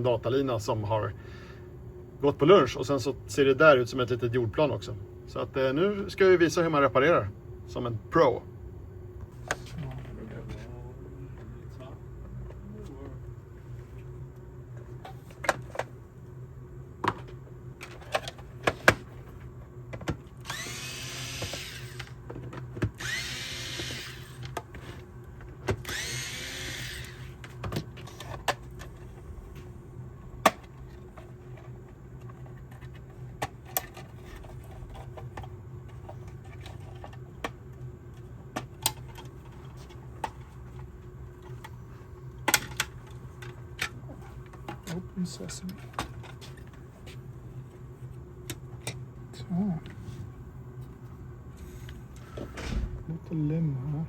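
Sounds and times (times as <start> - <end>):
steady low hum: 0.0 - 54.0
small power tool running: 20.4 - 22.2, 23.0 - 24.5, 25.8 - 27.4.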